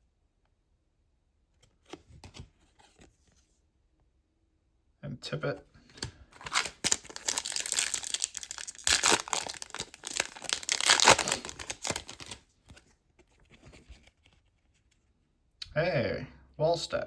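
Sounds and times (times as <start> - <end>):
cards being handled: 1.6 - 3.4, 5.8 - 15.0
foil wrapper crinkling: 6.3 - 12.8.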